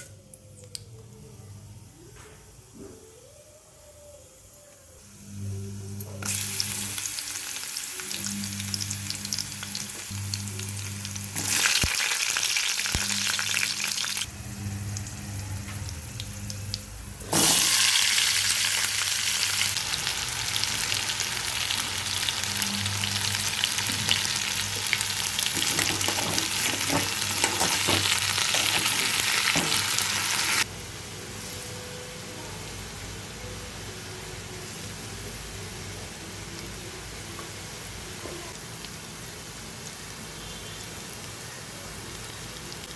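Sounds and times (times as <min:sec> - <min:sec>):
potatoes sizzling in hot oil: 0:06.2 - 0:30.7.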